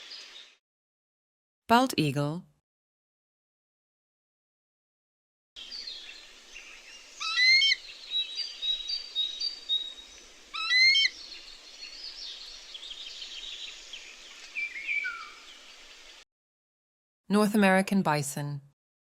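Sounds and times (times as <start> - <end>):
steady outdoor hiss: 0.0 - 0.6, 5.6 - 16.2
eagle chattering calls: 7.2 - 7.8, 10.5 - 11.2
songbird whistles: 7.2 - 9.9, 10.6 - 11.3, 14.6 - 15.4.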